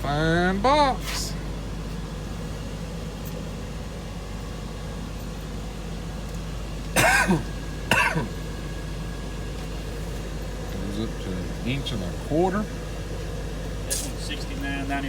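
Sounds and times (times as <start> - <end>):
steady low hum: 0.0 - 15.0
person coughing: 7.0 - 8.4.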